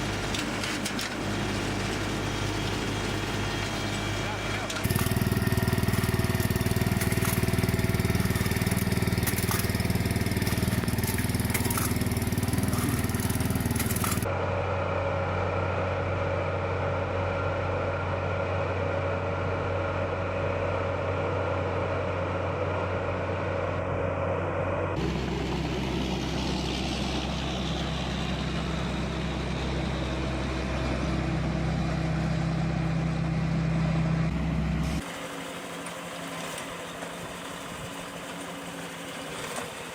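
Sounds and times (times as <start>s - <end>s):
farm machinery engine drone: 0.0s - 39.9s
mechanical clatter: 4.8s - 14.3s.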